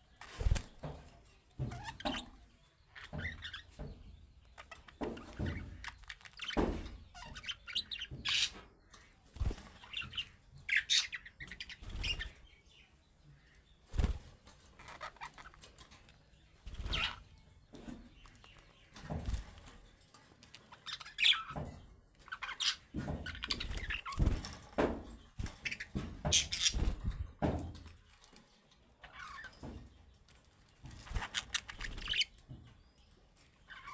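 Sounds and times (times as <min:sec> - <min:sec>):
budgerigars chirping: 0:04.6 - 0:08.6, 0:09.8 - 0:12.4
wing flutters: 0:23.3 - 0:24.8, 0:25.4 - 0:27.5, 0:30.9 - 0:32.4.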